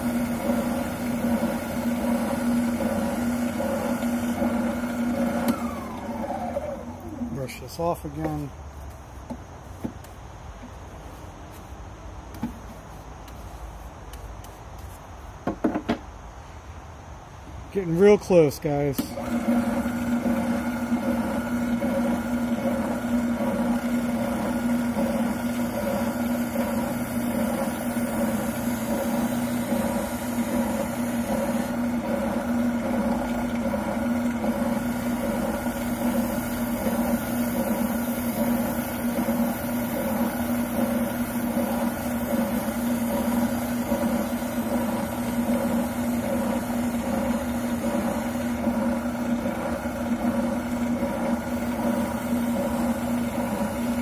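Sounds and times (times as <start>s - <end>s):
oscillating sander humming: 0.0s - 8.4s, 18.0s - 54.0s.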